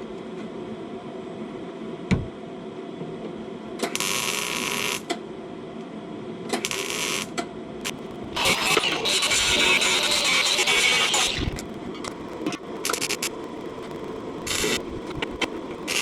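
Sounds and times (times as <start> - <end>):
welding crackle bursts: 4.0 - 5.0, 6.6 - 16.0
steady low hum: 7.8 - 16.0.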